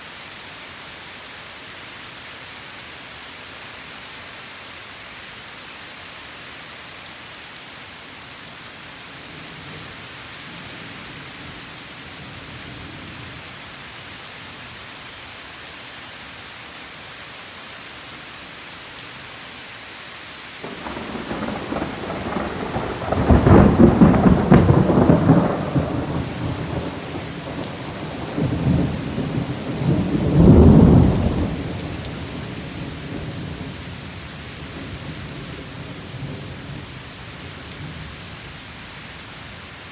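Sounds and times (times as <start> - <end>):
steady rain falling: 0.0 - 39.9
thunder rolling: 20.6 - 33.7.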